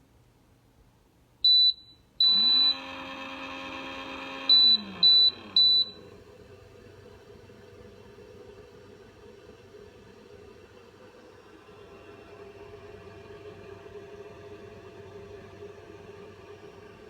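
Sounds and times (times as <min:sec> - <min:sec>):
faint steady hum: 0:00.0 - 0:17.0
coffee maker beeping: 0:02.2 - 0:06.4
motor spinning: 0:02.3 - 0:06.9.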